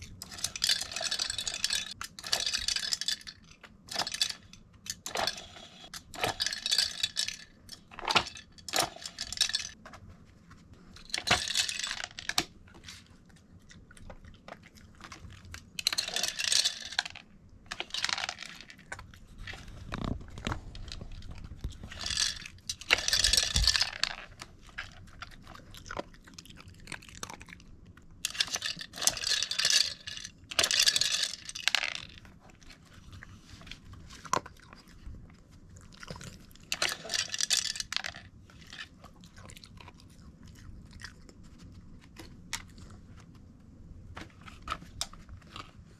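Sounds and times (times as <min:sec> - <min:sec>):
puzzle toy rattling and clattering: 0:00.0 - 0:09.8, 0:10.8 - 0:13.0, 0:15.1 - 0:25.7, 0:28.2 - 0:34.3, 0:36.6 - 0:39.0
dog crunching treats: 0:10.8 - 0:43.4.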